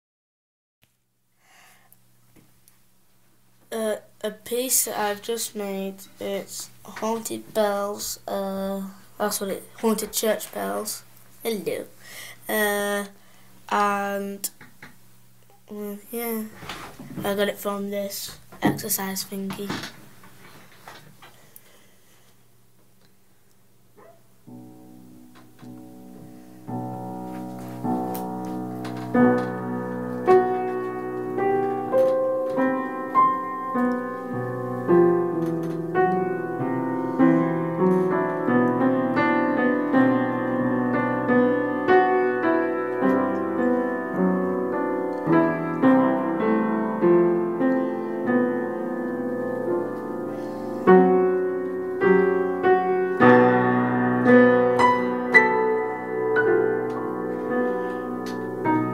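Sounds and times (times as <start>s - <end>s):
slow piano piece: 23.8s - 58.9s.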